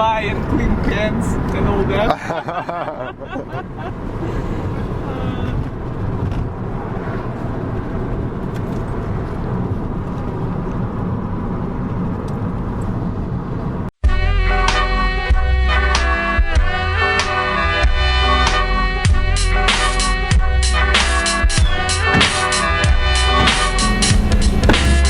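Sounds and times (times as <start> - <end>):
car cabin road and engine noise: 0.0 - 14.0, 20.8 - 25.0
music: 14.0 - 25.0.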